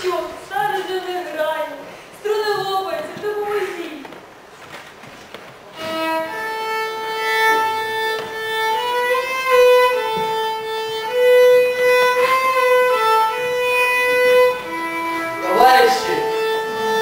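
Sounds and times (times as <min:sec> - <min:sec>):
solo violin slow melody: 0:05.7 - 0:17.0.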